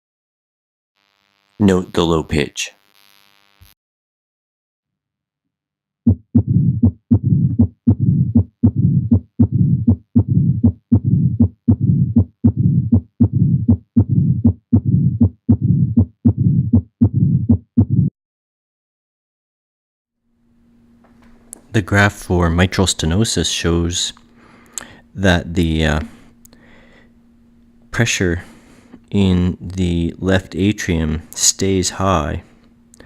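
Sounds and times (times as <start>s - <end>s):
heart sound clicks: 6.1s - 18.1s
low rumbling heart murmur: 6.1s - 18.1s.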